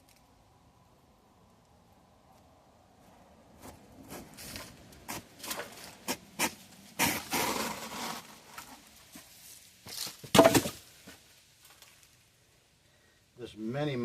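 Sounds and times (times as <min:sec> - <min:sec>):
digging in soil scraping: 0:04.1 - 0:10.2.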